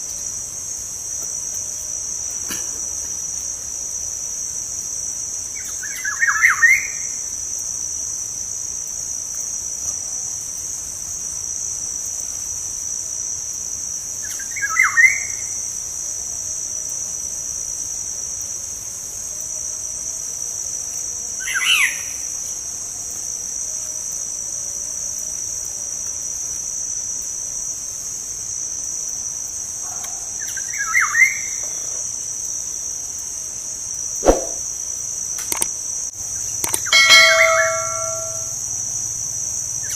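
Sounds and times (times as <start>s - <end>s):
high-pitched insect drone: 30.4s - 39.9s
short sharp knock: 34.2s - 34.6s.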